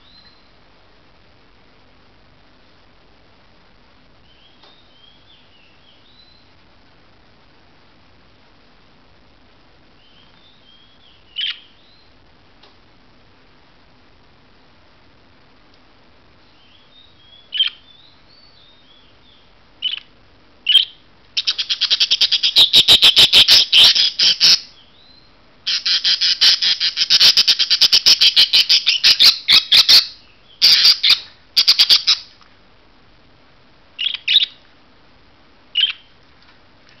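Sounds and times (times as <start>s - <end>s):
budgerigars squawking: 20.7s - 24.7s, 25.7s - 32.3s.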